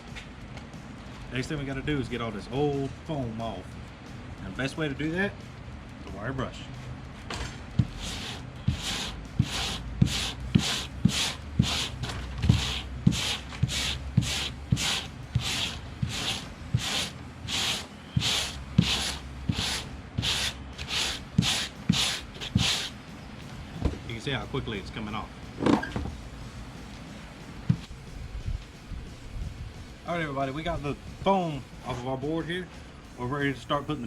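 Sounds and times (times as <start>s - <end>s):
wire brush scrubbing foam: 7.8s - 23.0s.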